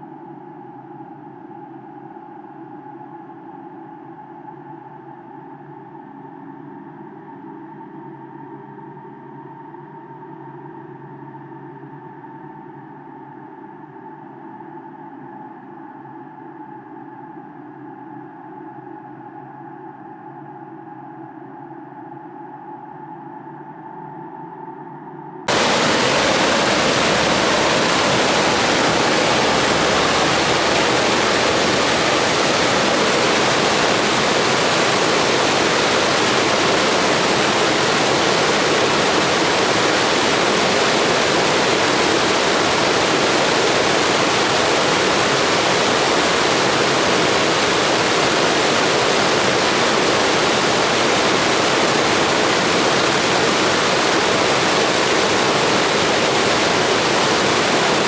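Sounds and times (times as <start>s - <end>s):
blizzard wind rushing: 25.5s - 58.0s.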